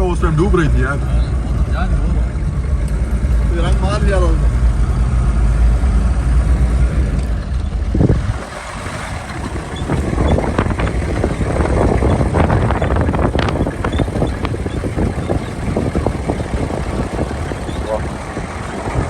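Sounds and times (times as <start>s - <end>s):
off-road vehicle engine rumble: 0.0s - 19.0s
wind noise on microphone: 6.5s - 19.0s
crackling and rattling: 7.0s - 19.0s.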